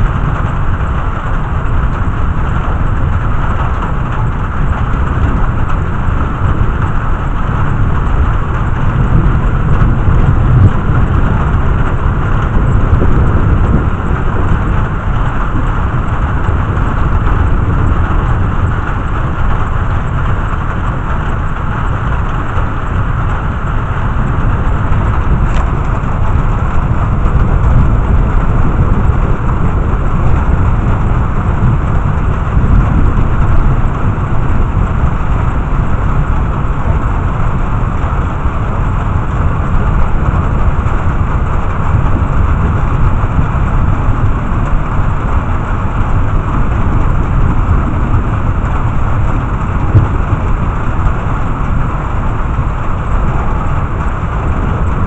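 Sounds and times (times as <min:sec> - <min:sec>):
deep low thunder rumble: 0:00.0 - 0:55.0
heavy rain falling: 0:00.0 - 0:55.0.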